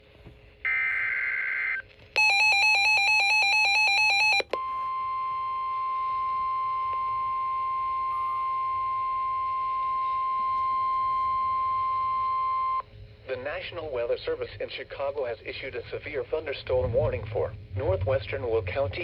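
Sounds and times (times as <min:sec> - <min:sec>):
steady warning alarm tone: 0:00.7 - 0:12.9.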